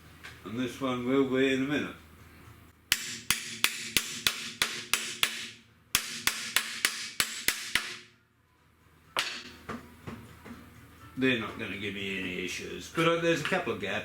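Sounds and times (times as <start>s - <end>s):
hammer striking steel: 2.9s - 8.1s, 9.2s - 9.8s.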